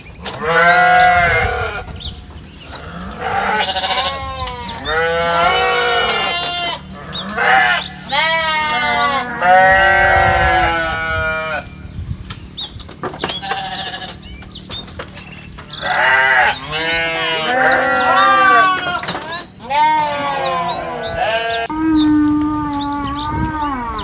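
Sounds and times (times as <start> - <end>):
farm animals bleating: 0.2 - 11.8, 13.3 - 14.3, 15.6 - 24.0.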